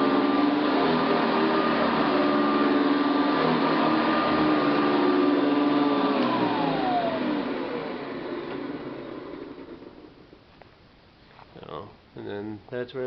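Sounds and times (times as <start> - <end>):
vacuum cleaner running: 0.0 - 10.4.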